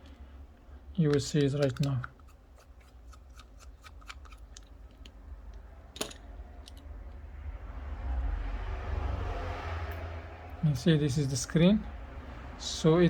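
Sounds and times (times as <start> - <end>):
small tools clicking and tapping: 1.1 - 7.2.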